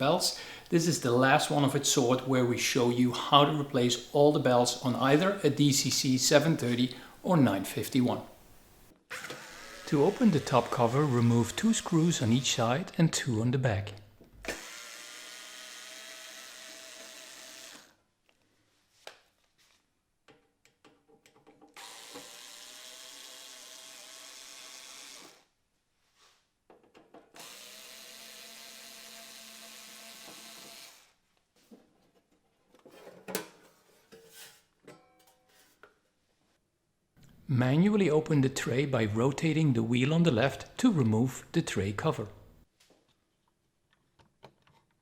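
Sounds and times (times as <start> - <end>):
electric screwdriver running: 9.1 - 12.6, 14.4 - 18.0, 21.8 - 25.5, 27.4 - 31.2.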